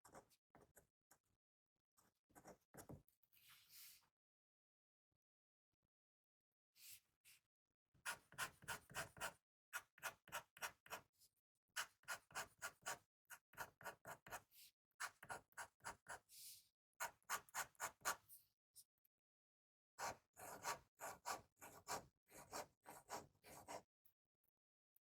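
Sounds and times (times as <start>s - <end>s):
pen nib scratching on paper: 20.0s - 23.8s.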